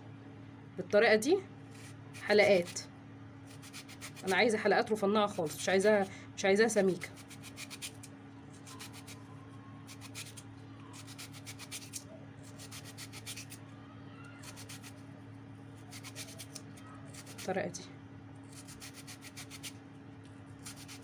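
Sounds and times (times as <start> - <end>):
knife slicing onion on cutting board: 15.9 - 17.5, 20.6 - 21.0.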